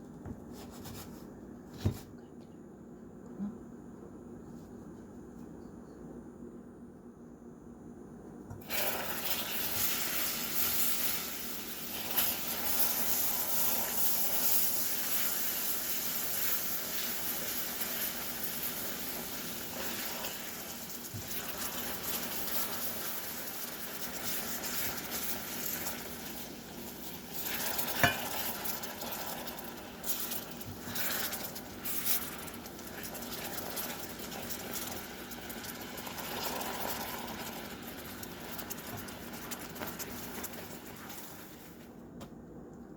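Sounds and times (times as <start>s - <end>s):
caramel bubbling and sizzling: 8.6s - 41.8s
spatula scraping a pan: 27.3s - 34.0s.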